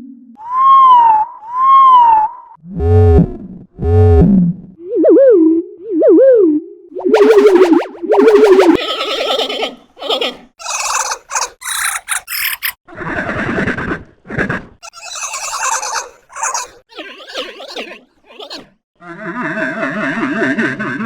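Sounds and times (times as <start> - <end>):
loud warbling effect tone: 7.0 - 8.8
animal squealing and gobbling cries: 8.7 - 13.9, 14.8 - 21.0.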